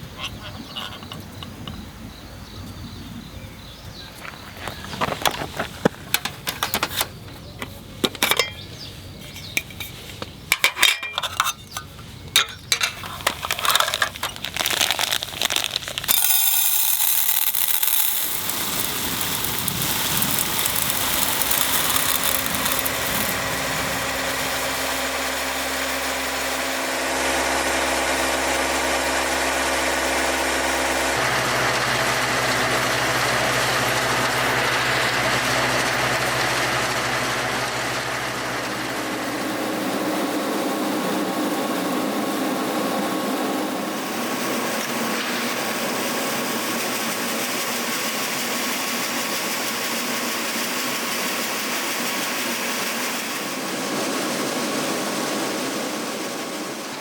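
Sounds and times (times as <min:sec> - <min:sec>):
engine running: 0:03.6 - 0:56.9
sharp clicks and knocks: 0:04.9 - 0:23.5.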